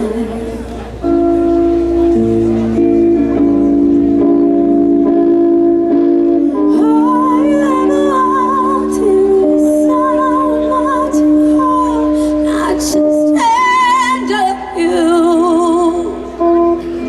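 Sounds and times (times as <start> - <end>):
lead melody with vibrato: 0.0 - 17.0
live rock band playing: 0.0 - 17.0.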